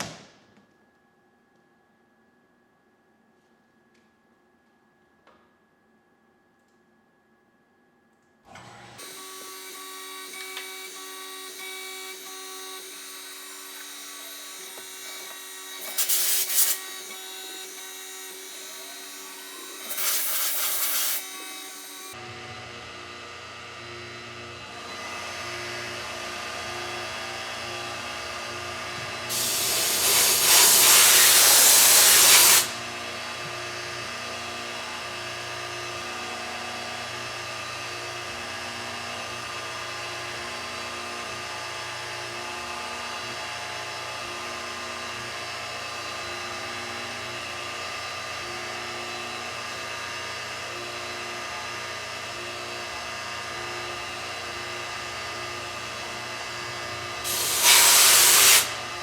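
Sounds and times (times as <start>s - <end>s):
milling machine spindle whine: 9.0s - 22.7s, 24.3s - 38.4s, 44.3s - 59.0s
loud hiss: 19.9s - 21.2s, 29.3s - 32.8s, 57.3s - 58.8s.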